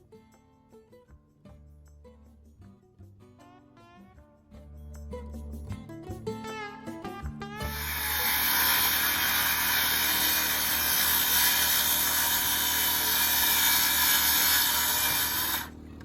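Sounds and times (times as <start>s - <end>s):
acoustic guitar music: 2.0s - 9.9s
power tool running: 7.6s - 16.0s.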